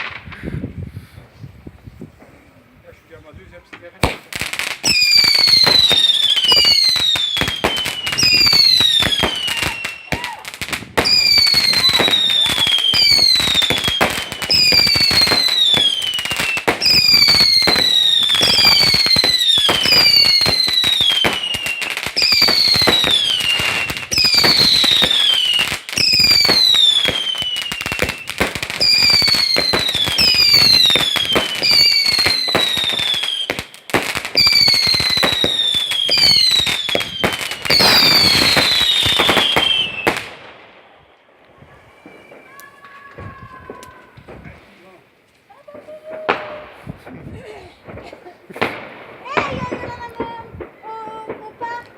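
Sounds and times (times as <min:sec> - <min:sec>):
fireworks crackling bangs: 0:00.0 - 0:02.6, 0:03.2 - 0:51.9
descending firework whistles: 0:04.1 - 0:40.8, 0:41.4 - 0:44.5.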